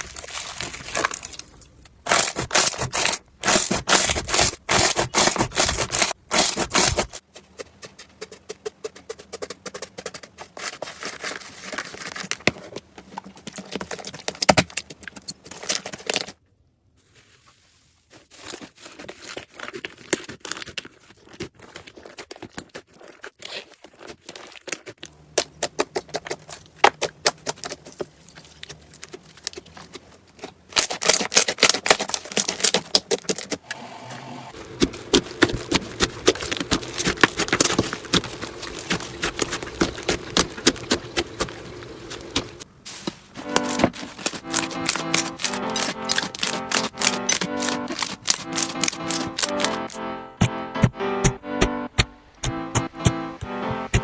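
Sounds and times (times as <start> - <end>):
slime crackling and popping: 34.7 - 42.6, 43.4 - 50.5.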